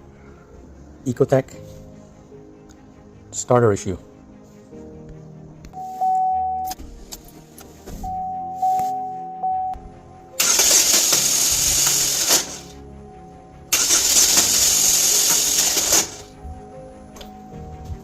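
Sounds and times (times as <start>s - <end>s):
car starter harsh whir: 8.0s - 12.9s, 13.6s - 16.4s.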